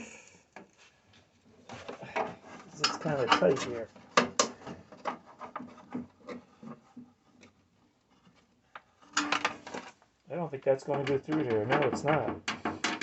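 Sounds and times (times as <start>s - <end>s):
hand scraping and rubbing: 1.7s - 4.0s.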